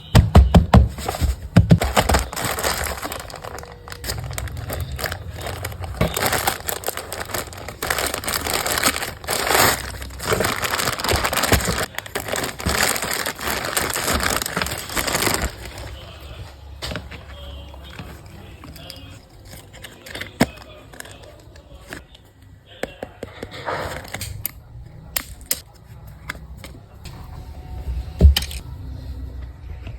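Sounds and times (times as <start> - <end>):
clicks and rustles: 1.0 - 16.0
packaging crinkling and tearing: 1.0 - 16.1, 18.0 - 22.0.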